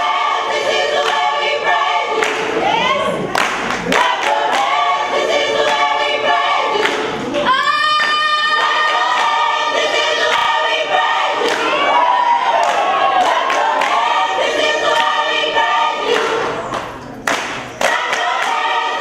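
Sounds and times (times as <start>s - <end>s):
choir singing sustained chord: 0.0s - 2.3s, 3.9s - 7.3s, 8.6s - 16.7s, 17.8s - 19.0s.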